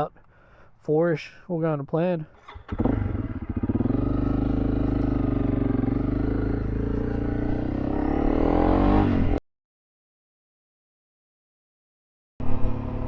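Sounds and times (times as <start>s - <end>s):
motorcycle engine idling and revving: 2.4s - 9.4s, 12.4s - 13.0s.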